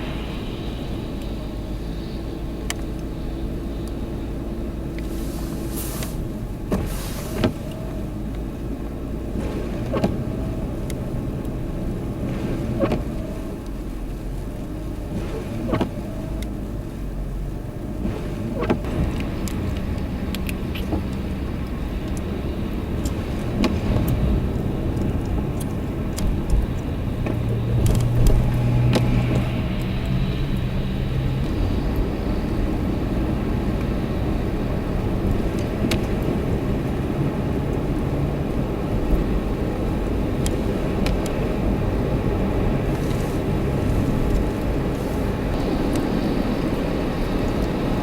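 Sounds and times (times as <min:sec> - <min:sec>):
deep drone: 0:00.0 - 0:05.0, 0:18.8 - 0:48.0
vehicle road and engine rumble: 0:00.0 - 0:48.0.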